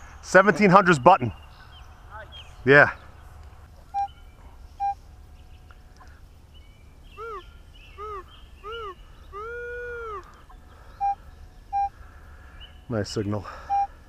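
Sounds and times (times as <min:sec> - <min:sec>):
rising and falling detector tones: 0:03.9 - 0:04.1, 0:07.2 - 0:10.3, 0:11.0 - 0:11.9
metal detector beep: 0:03.9 - 0:04.2, 0:11.0 - 0:11.9, 0:13.7 - 0:13.9.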